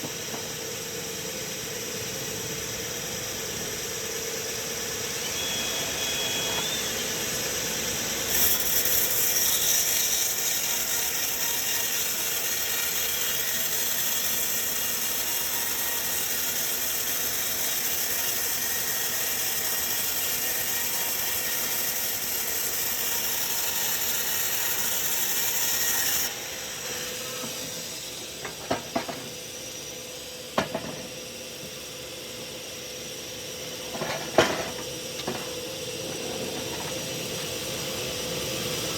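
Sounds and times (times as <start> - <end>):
sawmill saw cutting log: 1.5 - 31.8.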